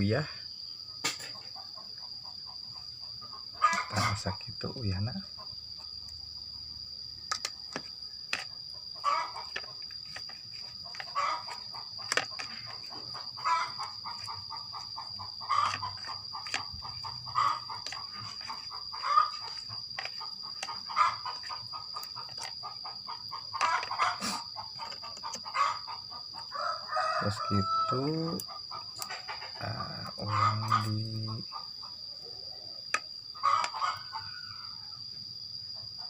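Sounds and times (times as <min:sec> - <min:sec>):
chicken clucking: 0:03.3 - 0:04.2, 0:09.0 - 0:10.3, 0:10.9 - 0:26.2, 0:28.3 - 0:31.4, 0:33.4 - 0:34.2.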